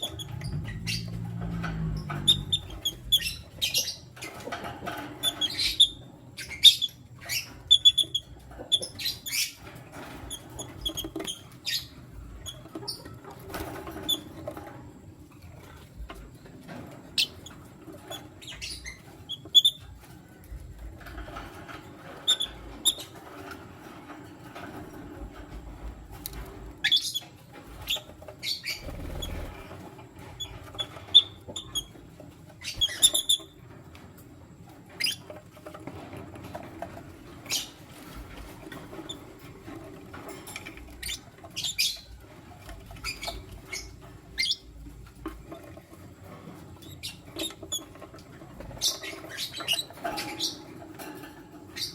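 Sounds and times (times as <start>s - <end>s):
wings fluttering and scuffling: 0.0s - 51.9s
lovebirds chirping: 32.6s - 33.5s.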